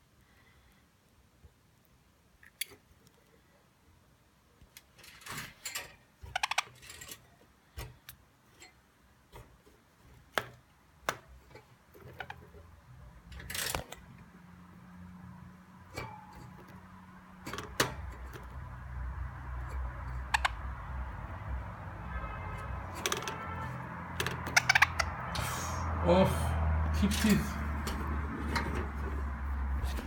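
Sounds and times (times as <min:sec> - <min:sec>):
scratchy rustles: 0:28.0 - 0:30.0.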